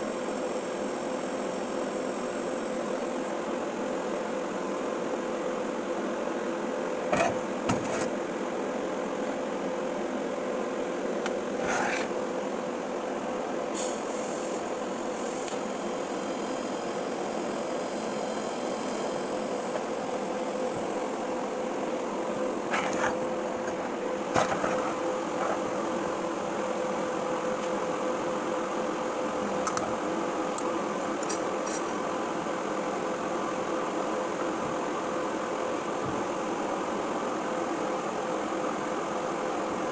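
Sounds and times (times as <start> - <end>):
welding arc hiss: 13.7 - 21.4, 30.6 - 32.0.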